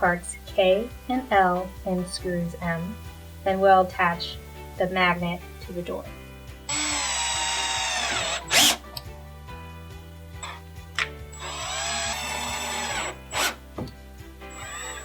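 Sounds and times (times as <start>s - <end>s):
background music: 0.0s - 15.0s
cordless drill driving screws: 6.7s - 8.8s, 11.4s - 13.6s, 14.5s - 15.0s.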